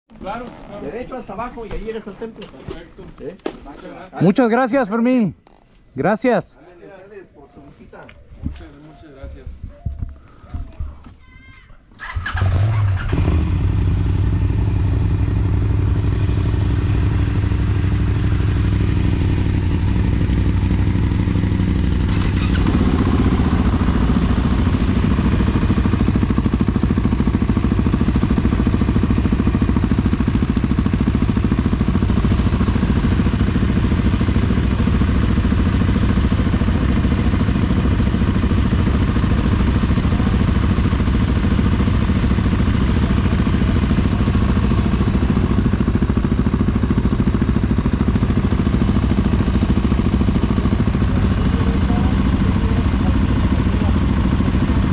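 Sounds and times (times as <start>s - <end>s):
vehicle engine idling and pulling away: 12.0s - 54.9s.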